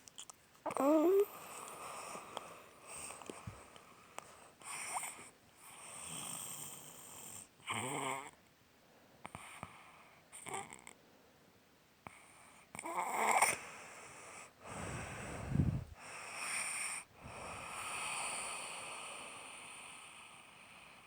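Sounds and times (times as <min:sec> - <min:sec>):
person snoring: 0:00.7 - 0:01.3
noisy breathing: 0:13.7 - 0:19.7.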